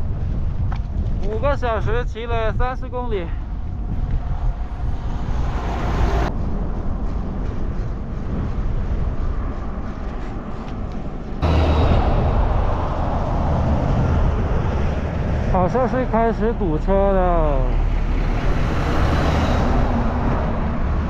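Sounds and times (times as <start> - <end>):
strong wind buffeting microphone: 0.0 - 21.0.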